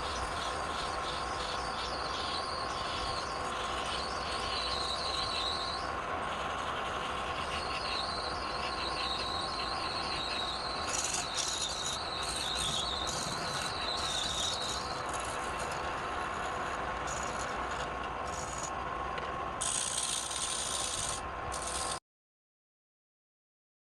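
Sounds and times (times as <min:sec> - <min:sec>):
high wavering squeal: 0:00.0 - 0:18.7
wood lathe humming: 0:00.0 - 0:18.7, 0:19.6 - 0:21.9
tool scraping spinning wood: 0:00.0 - 0:22.0.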